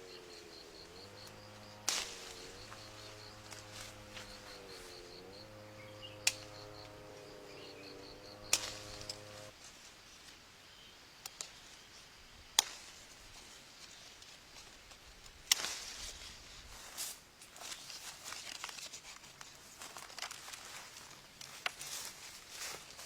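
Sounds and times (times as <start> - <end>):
rustling and crackling: 1.4 - 5.2, 12.6 - 23.0
sharp snaps: 6.2 - 6.6.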